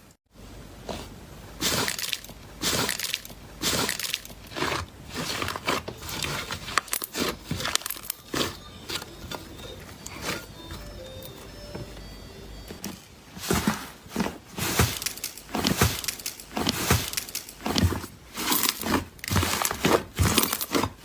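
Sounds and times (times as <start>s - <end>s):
slime squishing by hand: 0.8s - 10.6s, 13.3s - 21.0s.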